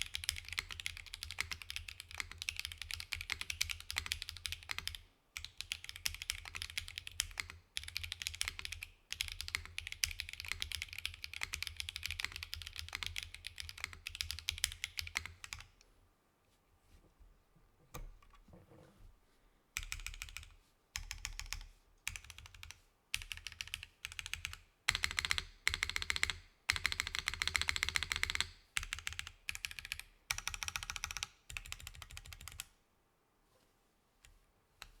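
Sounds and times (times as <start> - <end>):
mechanical keyboard typing: 0.0 - 15.7, 19.8 - 32.7.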